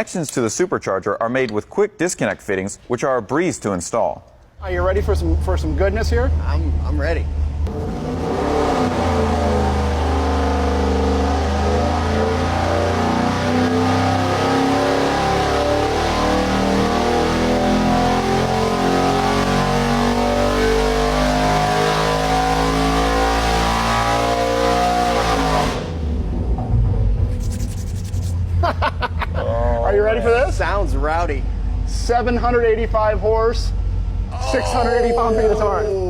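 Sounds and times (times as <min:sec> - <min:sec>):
supercharged engine at full throttle: 0:07.6 - 0:26.4.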